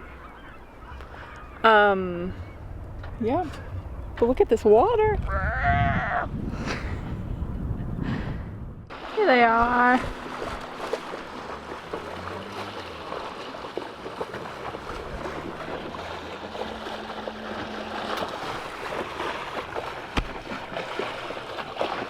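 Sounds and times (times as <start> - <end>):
water noise: 0.0 - 22.0
wind: 0.0 - 22.0
outboard motor running: 8.9 - 22.0.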